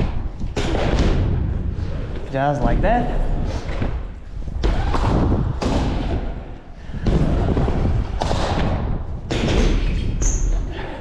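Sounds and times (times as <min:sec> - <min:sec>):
bike tyres rolling on wooden ramps: 0:03.6 - 0:10.6.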